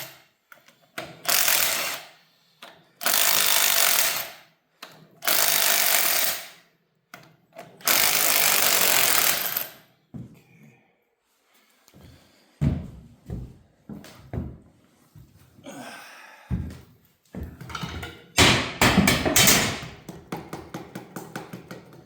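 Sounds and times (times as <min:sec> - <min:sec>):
impact wrench bursts: 0:01.2 - 0:02.2, 0:03.0 - 0:04.4, 0:05.2 - 0:06.6, 0:07.8 - 0:09.8.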